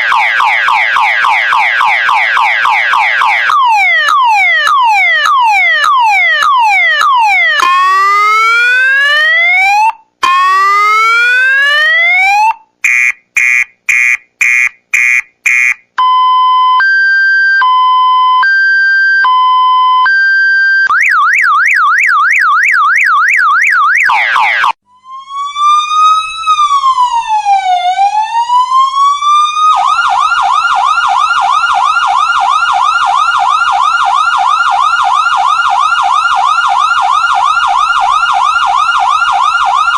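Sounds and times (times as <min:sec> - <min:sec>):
electronic siren: 0:00.0 - 0:39.9
quick electronic beeps: 0:12.8 - 0:15.8.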